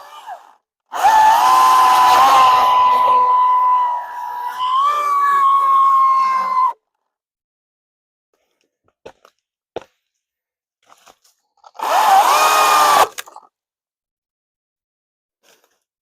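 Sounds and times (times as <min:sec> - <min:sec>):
chainsaw motor whining: 0:00.0 - 0:04.7, 0:11.8 - 0:13.4.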